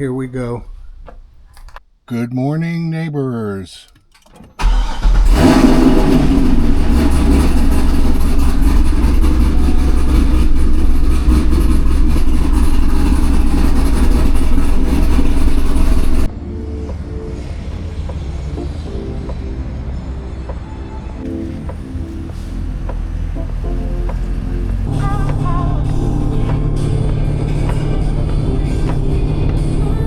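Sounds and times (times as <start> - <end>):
car engine starting and revving: 0.0 - 1.8, 3.9 - 30.0
music: 16.2 - 30.0.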